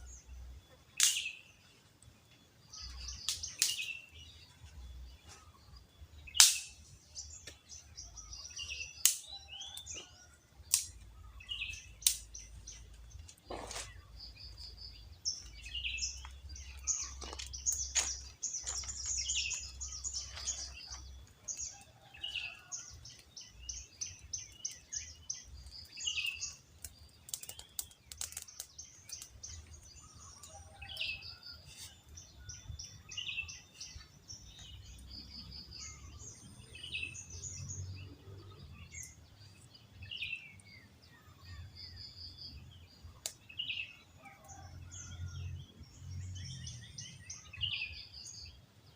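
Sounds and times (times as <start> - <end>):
birds chirping: 0.0 - 48.9.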